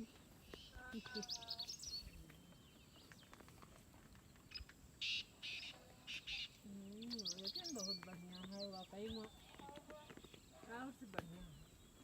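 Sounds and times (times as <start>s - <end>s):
birds chirping: 0.0s - 12.0s
harsh raspy bird calls: 5.0s - 7.9s.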